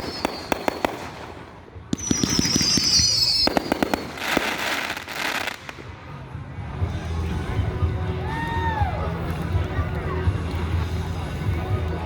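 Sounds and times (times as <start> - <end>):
firework whistles: 0.0 - 1.3, 1.9 - 5.6
firework pops and cracks: 0.0 - 5.9.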